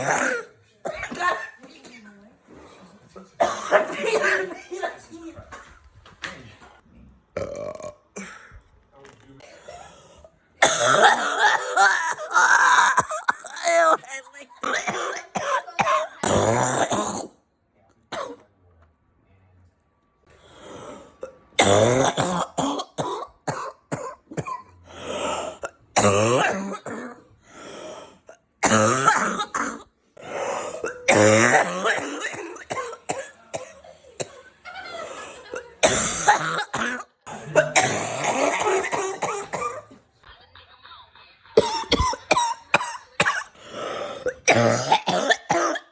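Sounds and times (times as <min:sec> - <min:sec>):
people coughing: 0:00.0 - 0:02.1, 0:03.4 - 0:05.1, 0:09.4 - 0:17.4, 0:18.1 - 0:18.5, 0:21.2 - 0:40.0, 0:41.6 - 0:45.9
throat clearing: 0:35.5 - 0:40.0.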